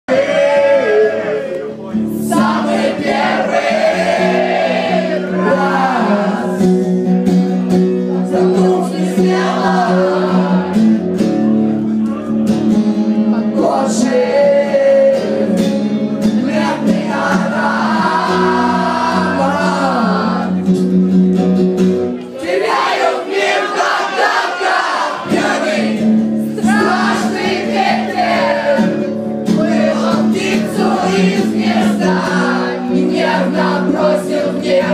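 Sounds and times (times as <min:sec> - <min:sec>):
person singing: 0:05.1 - 0:07.1, 0:08.2 - 0:11.0.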